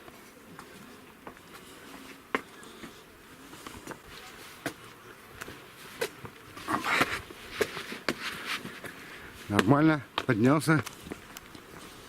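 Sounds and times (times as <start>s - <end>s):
faint buzzing of flying insects: 0.0s - 12.0s
shoes clicking on rock steps: 5.4s - 12.0s.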